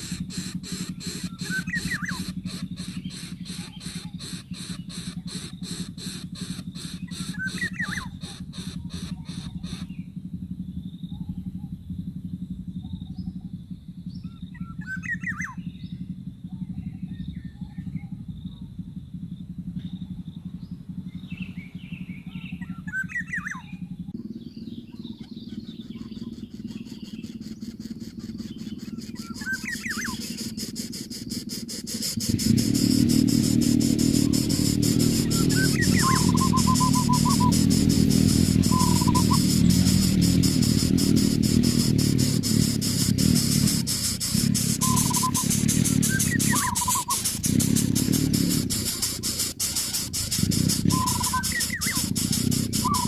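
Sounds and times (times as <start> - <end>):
rapid even ticking: 0.0 - 11.1, 17.2 - 53.0
bird chirping: 0.0 - 11.8, 12.7 - 18.6, 19.2 - 53.0
low motor drone: 0.0 - 53.0
high insect-like tone: 23.8 - 53.0.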